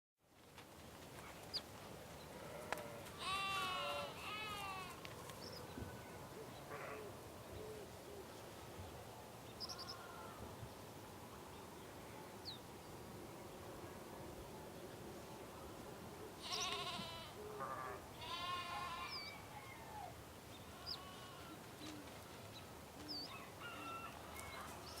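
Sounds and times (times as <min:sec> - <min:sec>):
faint steady background noise: 0:00.2 - 0:25.0
sheep bleating: 0:02.5 - 0:05.0, 0:16.4 - 0:19.3, 0:20.7 - 0:21.6.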